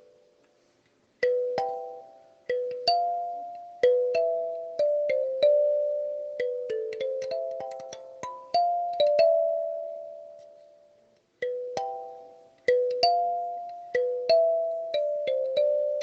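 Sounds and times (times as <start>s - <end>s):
kalimba melody: 1.2s - 16.0s.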